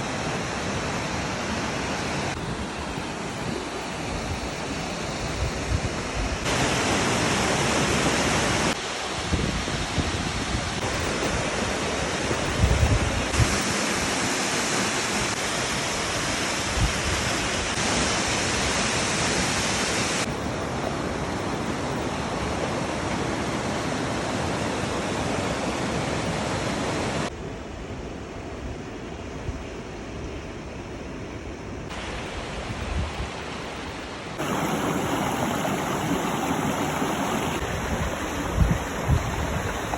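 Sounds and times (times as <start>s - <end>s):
stream rushing over rocks: 0.0s - 12.6s, 34.3s - 39.9s.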